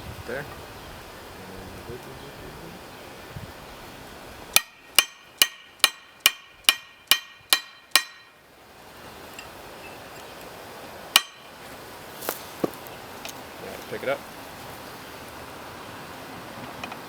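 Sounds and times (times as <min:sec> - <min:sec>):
hammer striking steel: 0:04.6 - 0:08.4, 0:11.2 - 0:11.6.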